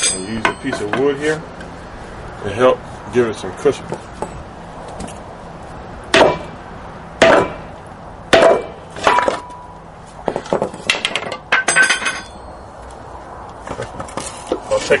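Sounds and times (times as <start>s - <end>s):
metallic ring: 0.0s - 1.2s, 10.8s - 12.8s.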